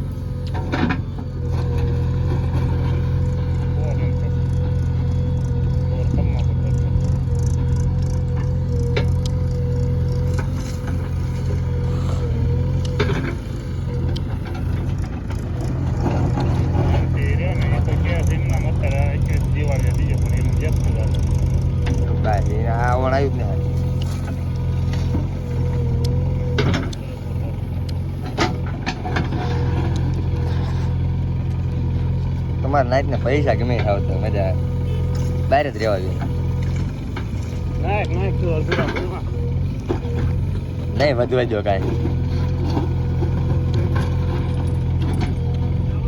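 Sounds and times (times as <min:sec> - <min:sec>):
diesel engine running: 0:00.0 - 0:46.0
thin steady whine: 0:02.8 - 0:29.4.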